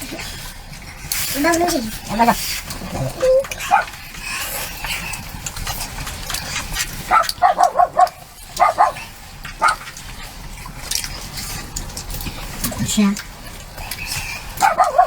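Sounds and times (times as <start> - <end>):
dog barking: 3.6 - 4.0, 7.1 - 9.9, 14.6 - 15.0.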